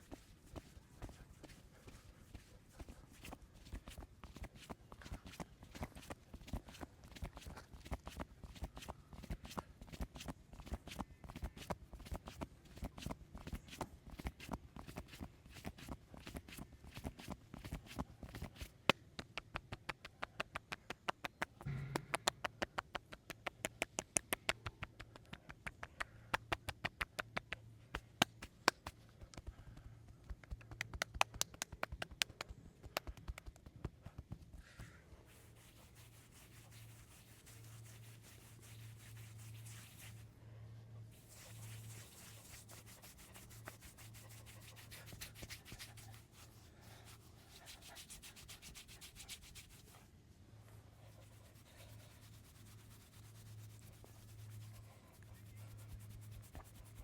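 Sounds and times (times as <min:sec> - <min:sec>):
hands rubbing skin: 0:00.0 - 0:21.6, 0:22.2 - 0:40.3, 0:41.1 - 0:50.0, 0:51.0 - 0:57.0
hands slapping body: 0:00.0 - 0:34.6.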